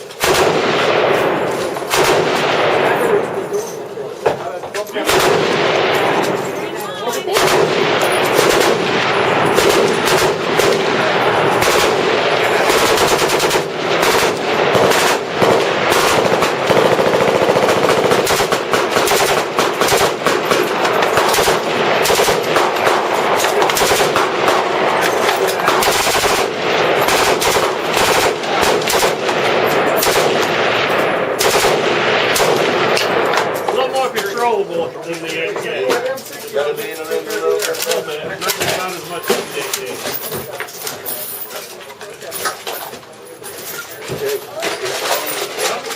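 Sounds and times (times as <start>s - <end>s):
automatic weapons firing: 0.0s - 3.5s, 5.0s - 34.0s.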